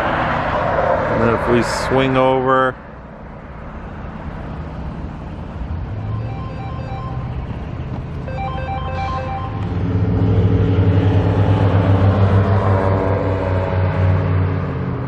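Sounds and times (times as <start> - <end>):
vehicle engine running: 3.0 - 13.7
electronic ringing tune: 5.9 - 9.8.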